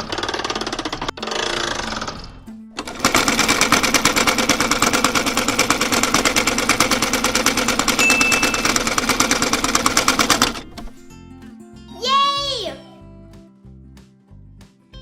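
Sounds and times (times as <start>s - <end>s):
sewing machine running fast: 0.0s - 10.8s.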